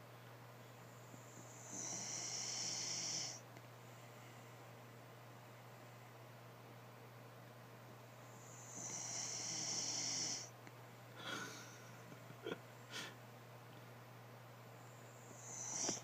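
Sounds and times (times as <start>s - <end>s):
pet snorting breath: 15.4s - 16.0s.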